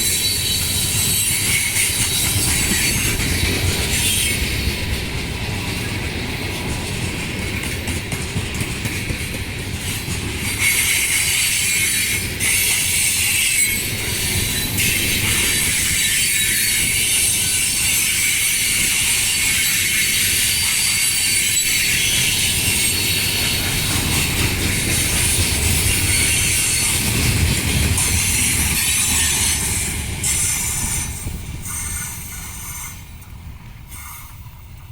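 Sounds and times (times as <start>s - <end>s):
wheels hissing and squealing: 0.0s - 4.6s, 10.5s - 33.1s, 33.9s - 34.5s
train wheels rumbling on rail: 0.0s - 34.9s.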